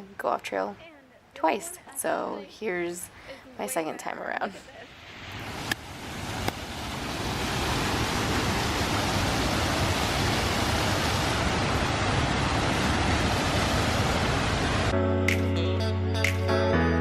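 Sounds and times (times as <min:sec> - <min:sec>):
large waterfall rushing: 0:04.9 - 0:14.9.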